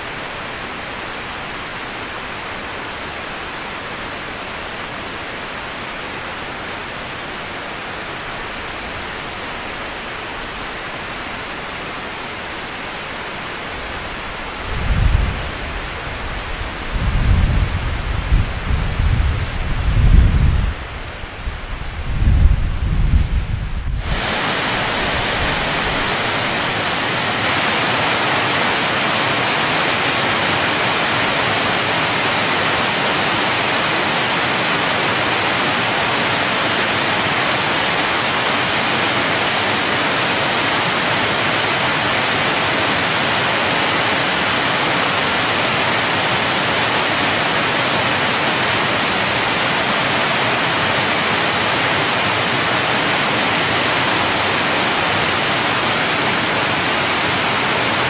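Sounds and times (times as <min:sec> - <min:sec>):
waterfall rushing: 0:23.9 - 0:58.0.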